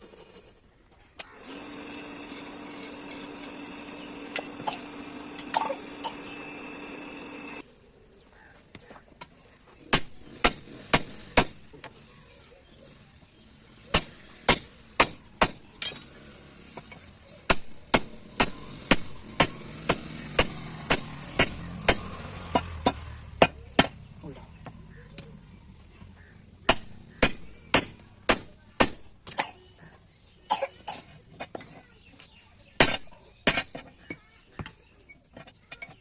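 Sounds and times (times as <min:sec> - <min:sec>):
hammer striking metal: 0:13.9 - 0:16.0, 0:17.5 - 0:24.0.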